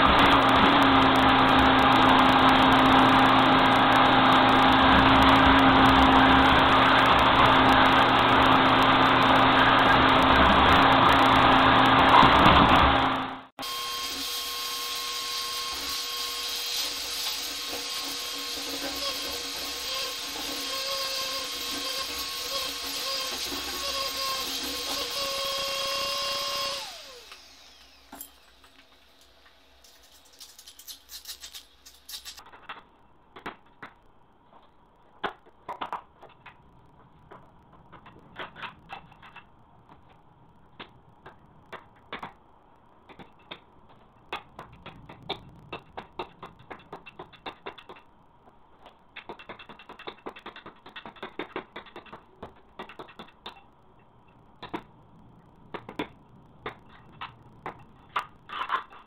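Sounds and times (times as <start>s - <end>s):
power tool motor spinning down: 0.0s - 29.4s.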